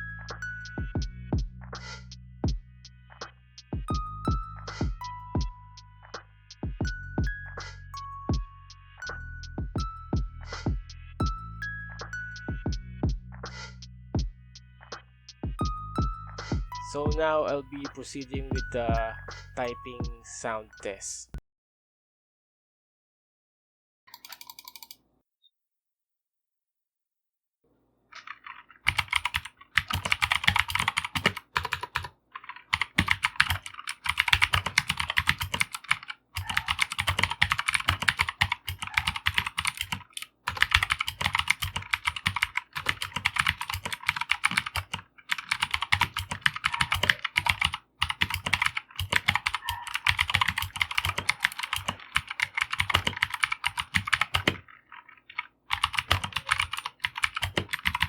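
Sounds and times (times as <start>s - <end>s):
mechanical keyboard typing: 24.2s - 25.0s, 28.2s - 58.0s.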